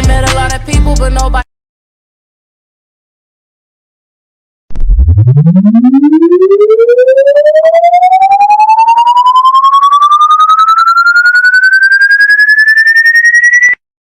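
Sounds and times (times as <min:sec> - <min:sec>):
pulsing rising electronic tone: 0:04.7 - 0:13.8.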